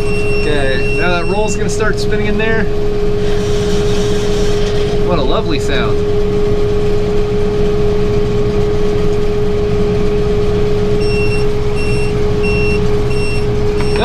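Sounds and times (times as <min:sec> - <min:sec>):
electronic monitor beeps: 0:00.0 - 0:01.9, 0:11.0 - 0:14.0
tractor engine rumble with whine: 0:00.0 - 0:14.0.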